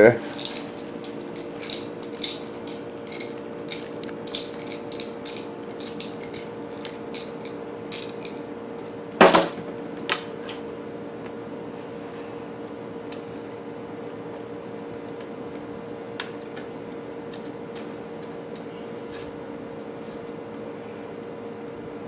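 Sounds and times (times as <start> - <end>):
metal parts clicking and clinking: 0.0 - 10.6
steady low hum: 0.0 - 22.0
metal clatter: 0.1 - 9.7.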